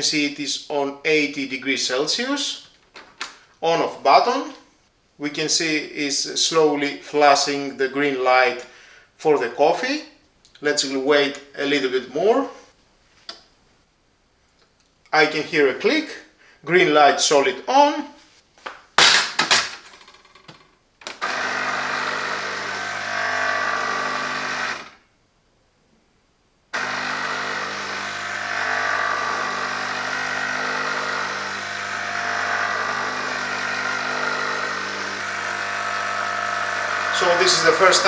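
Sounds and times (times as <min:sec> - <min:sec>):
espresso machine pump humming: 0:21.2 - 0:24.9, 0:26.8 - 0:38.0.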